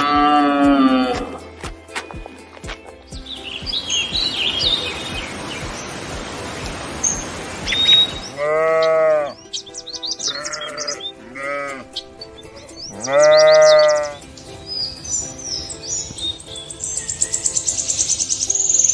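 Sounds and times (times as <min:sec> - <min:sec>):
sheep bleating: 0:00.0 - 0:01.5, 0:08.4 - 0:09.4, 0:10.2 - 0:12.0, 0:12.9 - 0:14.2
high bird chirps: 0:03.1 - 0:11.2, 0:11.9 - 0:18.9
steady hiss: 0:03.8 - 0:08.4.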